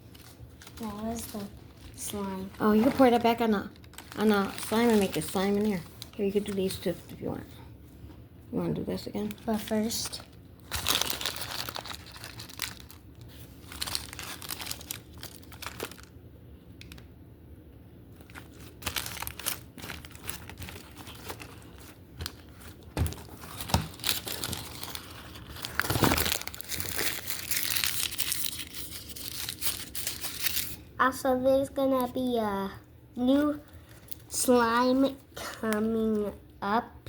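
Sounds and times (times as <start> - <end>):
crunchy slime crackling: 0.0 - 7.1, 9.0 - 16.2, 18.2 - 30.8.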